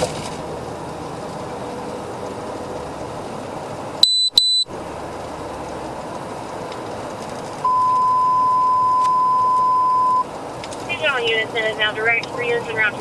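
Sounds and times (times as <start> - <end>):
long steady alert tone: 4.0 - 4.7, 7.6 - 10.2
short high beeps: 4.0 - 4.7, 7.6 - 10.3.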